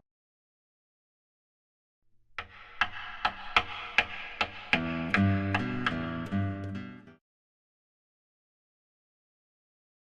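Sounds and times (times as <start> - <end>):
guitar ensemble notes ringing: 4.8 - 7.2.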